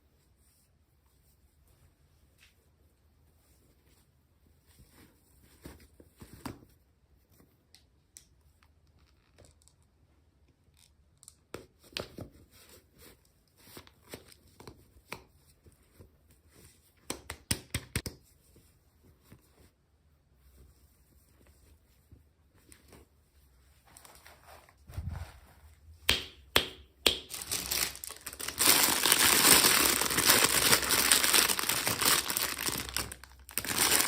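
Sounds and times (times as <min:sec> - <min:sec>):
packaging rustling: 0:27.3 - 0:34.0
packaging tearing: 0:27.3 - 0:34.0.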